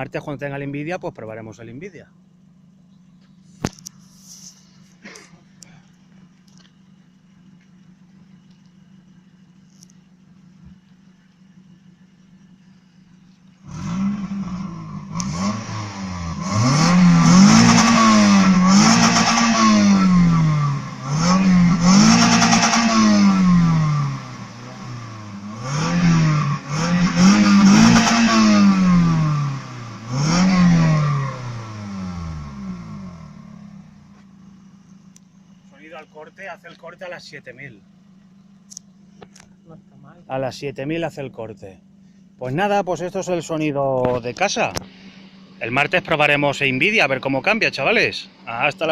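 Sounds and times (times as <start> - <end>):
car engine revving: 11.6 - 36.4, 42.6 - 48.9
rev limiter cutting in: 13.7 - 34.0.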